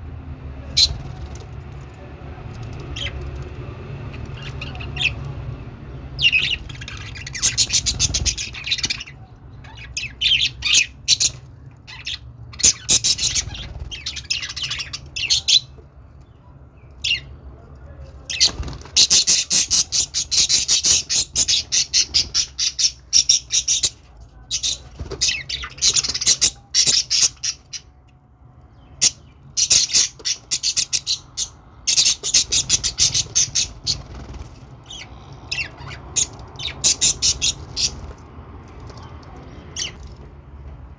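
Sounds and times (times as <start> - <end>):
budgerigars chattering: 4.1 - 5.3, 6.2 - 15.7, 18.3 - 27.9, 29.0 - 38.1, 38.9 - 40.0.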